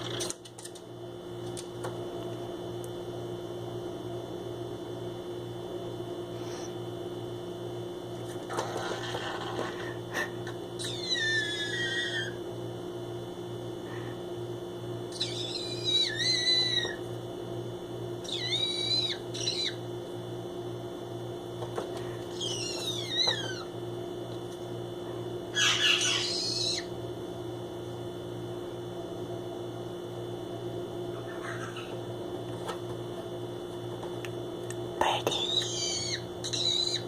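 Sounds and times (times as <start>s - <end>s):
steady low hum: 0.0s - 37.0s
parrot warbling calls: 10.8s - 12.4s, 15.1s - 17.0s, 18.2s - 19.8s, 22.3s - 23.7s, 25.5s - 26.9s, 31.2s - 32.0s, 35.4s - 37.0s.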